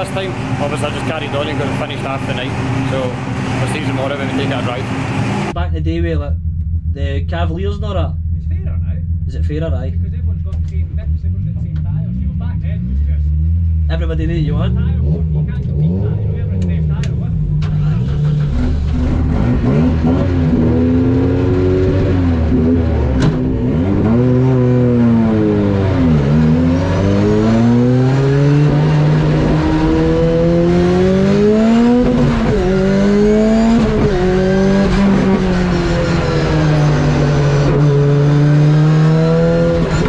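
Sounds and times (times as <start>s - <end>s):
car engine accelerating: 0.0s - 40.0s.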